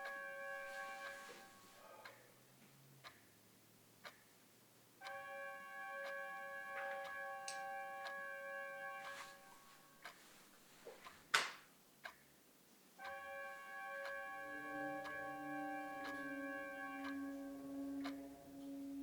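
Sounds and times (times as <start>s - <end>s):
held chord of steady tones: 0.0s - 2.0s, 5.0s - 10.1s, 13.0s - 19.0s
clock ticking: 0.0s - 10.3s, 11.0s - 19.0s.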